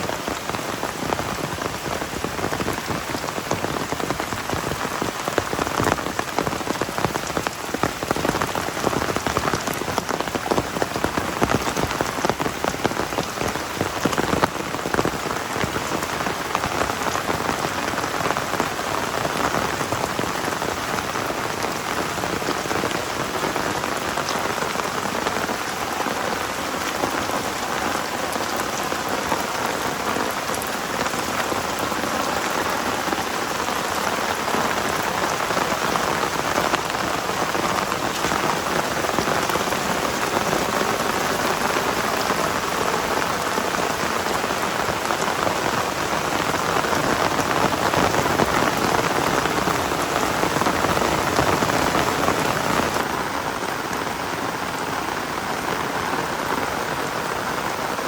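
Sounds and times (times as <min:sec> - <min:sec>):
heavy rain falling: 0:00.0 - 0:58.0
sharp rain patters: 0:00.0 - 0:58.0.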